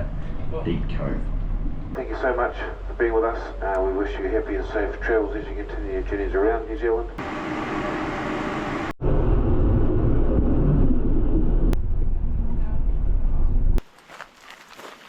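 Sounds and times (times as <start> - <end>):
boat engine rumble: 0.0 - 14.0
wind: 9.0 - 15.0.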